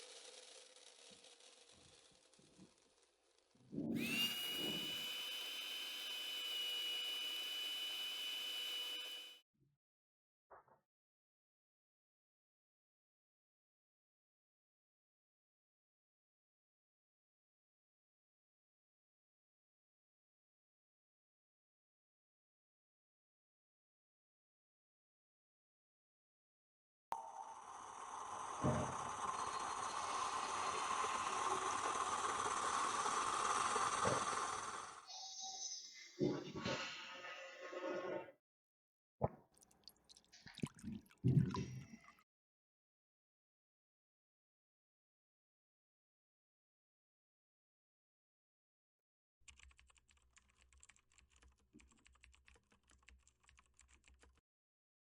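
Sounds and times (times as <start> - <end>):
coffee machine hissing rush: 0.0 - 2.3, 27.2 - 35.1
computer keyboard typing: 49.5 - 54.4.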